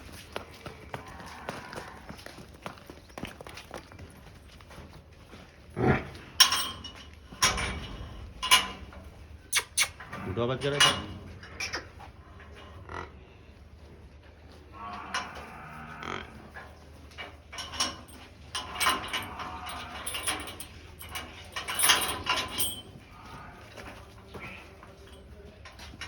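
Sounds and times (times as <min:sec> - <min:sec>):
cattle mooing: 0:00.3 - 0:02.4, 0:14.7 - 0:16.7, 0:18.7 - 0:25.3.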